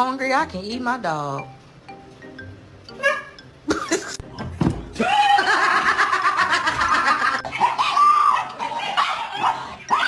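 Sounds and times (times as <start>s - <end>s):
laughter in bursts: 3.7s - 4.2s, 5.3s - 7.5s.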